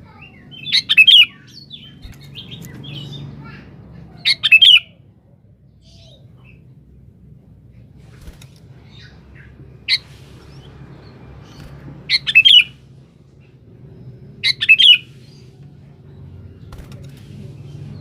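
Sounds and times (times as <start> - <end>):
bulbul calling: 0.1 - 3.2, 4.2 - 4.9, 12.1 - 12.8, 14.4 - 15.4.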